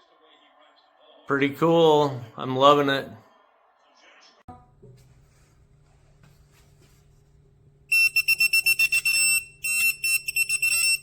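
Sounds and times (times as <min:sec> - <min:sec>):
shrill piezo beeper pulses: 0:07.9 - 0:11.0.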